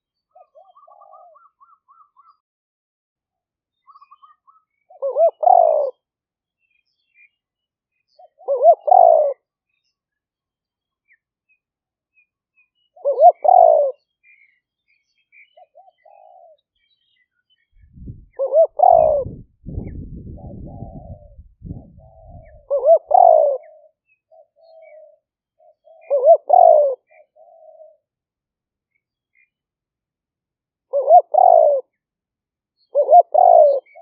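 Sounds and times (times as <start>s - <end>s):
faint small bird chirps: 0.0s - 2.4s, 3.7s - 28.1s, 28.8s - 29.7s
dove cooing: 0.4s - 1.5s, 4.9s - 6.0s, 8.4s - 9.4s, 13.0s - 14.0s, 15.8s - 16.6s, 18.0s - 28.0s, 30.9s - 31.9s, 32.9s - 34.0s
low rumble: 17.8s - 22.6s.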